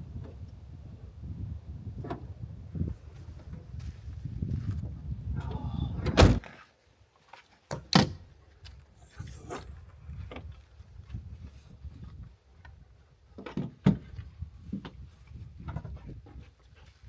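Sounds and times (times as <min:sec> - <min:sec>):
low wind rumble: 0:00.0 - 0:06.4
vehicle door thumping shut: 0:06.0 - 0:06.4.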